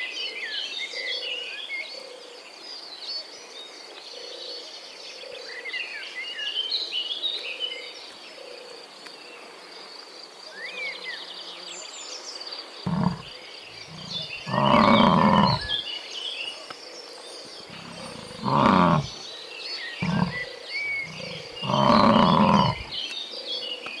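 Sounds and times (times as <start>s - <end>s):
insects buzzing: 12.5s - 15.8s, 17.7s - 19.3s, 20.0s - 23.1s
big cat roaring: 12.9s - 15.8s, 17.7s - 19.2s, 20.0s - 23.0s
birds chirping: 12.9s - 15.9s, 17.5s - 23.2s.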